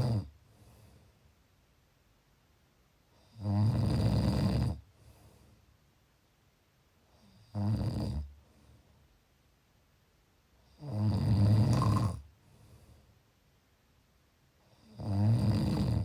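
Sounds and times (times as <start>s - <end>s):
person snoring: 0.0s - 0.3s, 3.3s - 4.8s, 7.2s - 8.3s, 10.8s - 12.3s, 14.8s - 16.0s
quiet breathing: 0.0s - 1.5s, 4.6s - 6.0s, 7.0s - 9.4s, 10.5s - 13.4s.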